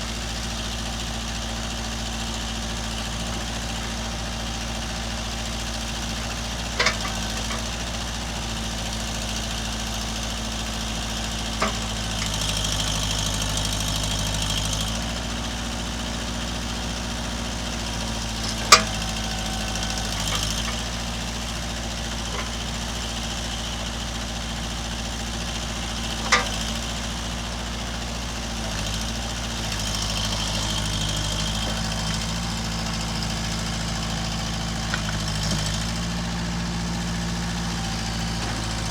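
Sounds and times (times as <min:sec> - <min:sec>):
diesel engine running: 0:00.0 - 0:38.9
short sharp clunks: 0:18.4 - 0:19.2.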